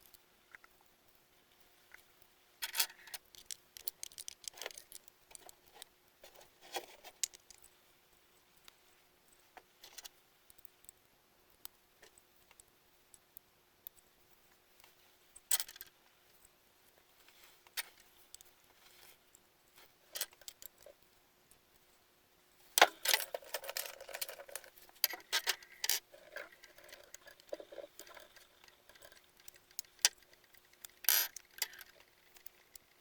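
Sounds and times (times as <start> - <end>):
plastic toy pieces clicking: 2.6 - 5.5, 22.8 - 33.0.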